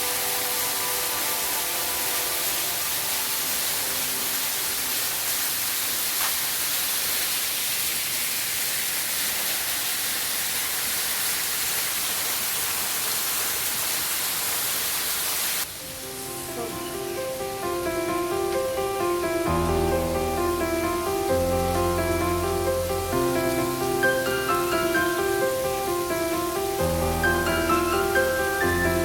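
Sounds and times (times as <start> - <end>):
music: 0.0 - 5.9, 15.7 - 29.0
waterfall pouring: 0.0 - 29.0.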